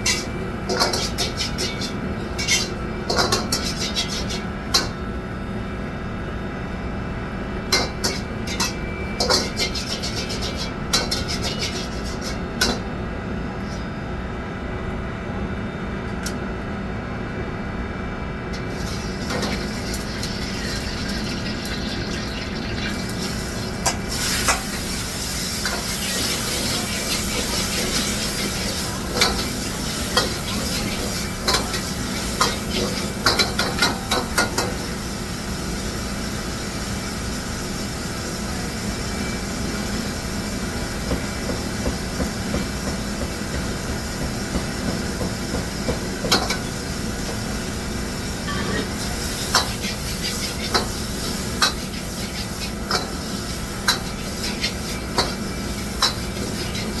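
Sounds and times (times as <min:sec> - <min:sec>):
metal utensil scraping a pan: 0:00.0 - 0:04.9, 0:08.0 - 0:12.4
low kitchen hum: 0:00.0 - 0:57.0
food sizzling in a pan: 0:18.7 - 0:44.1, 0:44.9 - 0:57.0.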